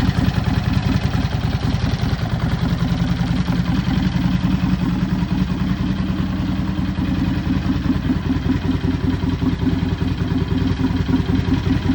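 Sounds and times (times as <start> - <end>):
engine rattle: 0.0 - 11.9
motorcycle engine idling: 0.0 - 11.9.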